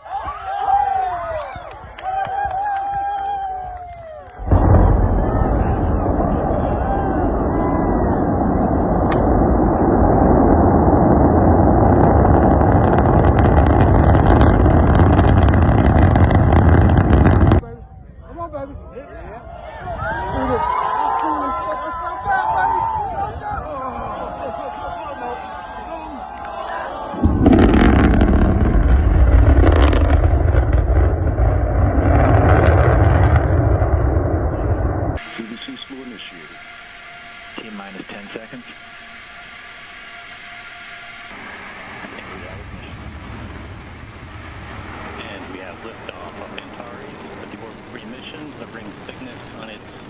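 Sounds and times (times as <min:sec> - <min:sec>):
rocket roaring: 0:04.0 - 0:17.6, 0:26.8 - 0:50.0
crackling: 0:04.2 - 0:17.6, 0:27.2 - 0:50.0.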